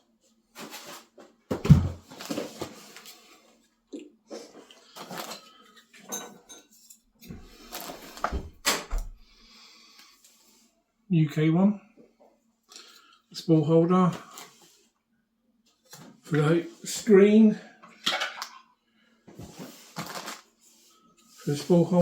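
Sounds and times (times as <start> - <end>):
packaging rustling: 19.7 - 20.5.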